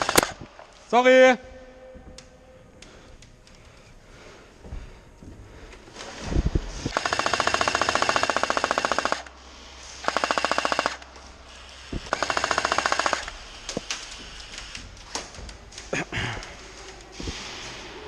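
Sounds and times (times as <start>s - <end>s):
toy machine gun firing bursts: 0.0s - 0.4s, 6.9s - 9.3s, 10.0s - 11.0s, 12.1s - 13.3s.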